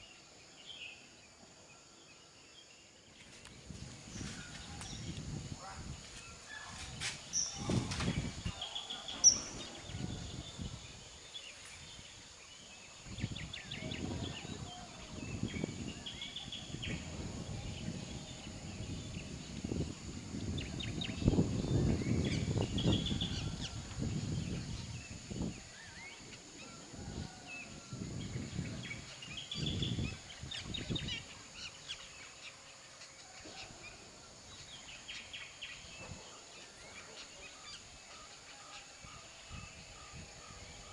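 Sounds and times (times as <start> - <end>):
small birds chirping: 0.0 - 19.8, 20.4 - 33.6
low rumbling gusts: 3.5 - 11.2, 13.0 - 31.6.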